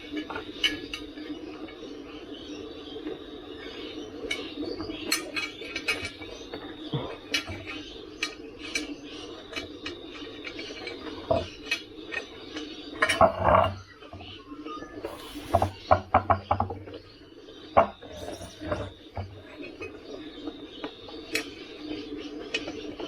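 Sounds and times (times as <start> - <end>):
steady hum: 0.0 - 23.0
metal tools clinking and tapping: 0.1 - 1.2, 4.3 - 14.3, 15.0 - 16.8, 17.8 - 19.9, 21.3 - 21.6.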